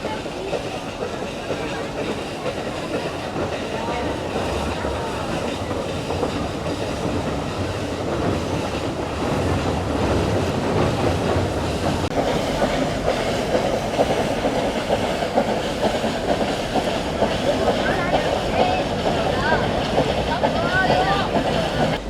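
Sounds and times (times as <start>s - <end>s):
train wheels rumbling on rails: 0.0s - 22.0s.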